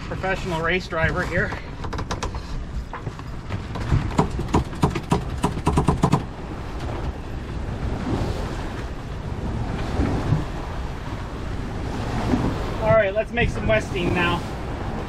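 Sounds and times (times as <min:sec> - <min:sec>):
water noise: 0:00.0 - 0:15.0
wind: 0:00.0 - 0:15.0
clicks and knocks on a sailboat: 0:00.2 - 0:07.2, 0:12.1 - 0:12.8.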